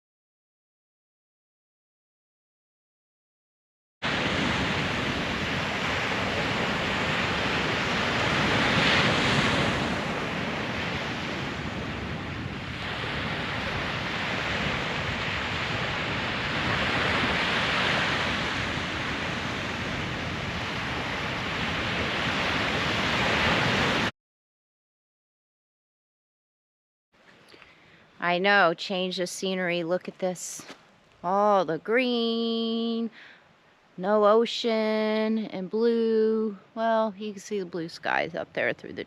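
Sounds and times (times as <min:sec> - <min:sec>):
wind rumbling on microphone: 0:04.0 - 0:24.1
ocean surf breaking: 0:04.1 - 0:24.1.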